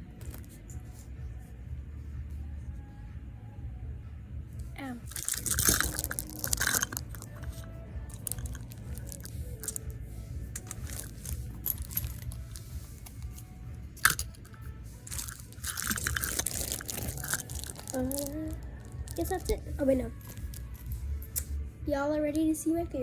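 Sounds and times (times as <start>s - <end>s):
faint background music: 0.0s - 23.0s
plastic rustling and clicking: 5.1s - 9.9s, 10.5s - 19.6s.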